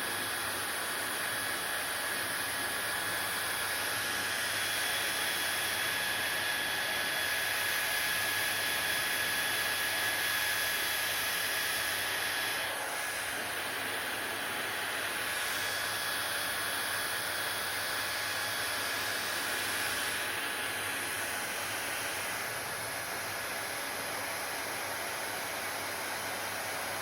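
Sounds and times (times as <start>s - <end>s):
hair dryer running: 0.0s - 27.0s.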